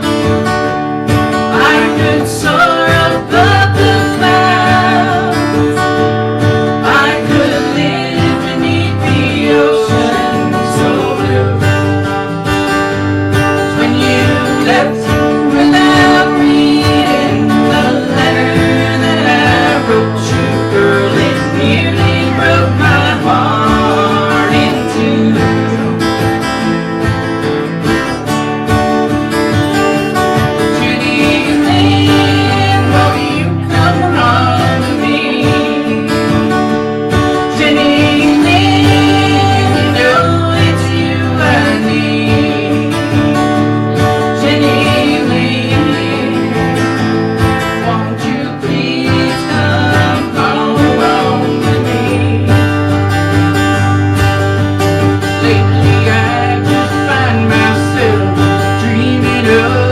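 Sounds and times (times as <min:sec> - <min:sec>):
acoustic guitar: 0:00.0 - 0:59.9
country band instrumental: 0:00.0 - 0:59.9.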